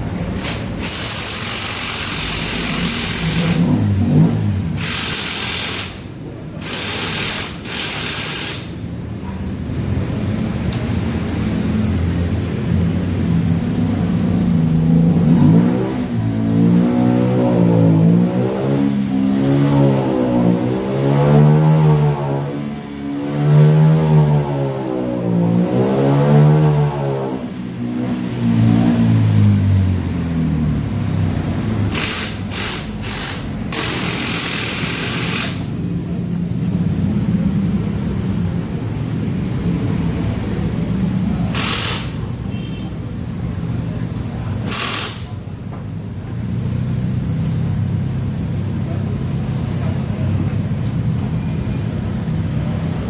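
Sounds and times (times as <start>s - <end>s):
hiss bursts: 0.4s - 3.7s, 4.8s - 8.9s, 31.9s - 35.8s, 41.5s - 42.3s, 44.6s - 45.4s
small motorcycle engine revving: 0.4s - 8.9s, 13.6s - 36.3s, 39.7s - 43.2s, 43.8s - 53.0s.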